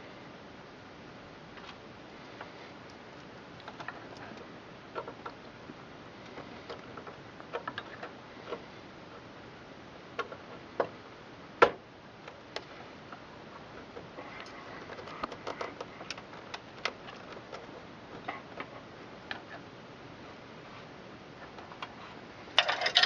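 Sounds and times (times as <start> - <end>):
plastic and metal parts clicking: 13.8 - 18.7.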